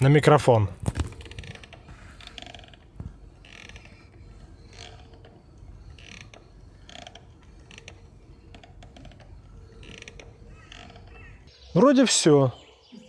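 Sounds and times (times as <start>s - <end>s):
steering wheel creaking and crunching: 0.0s - 11.5s.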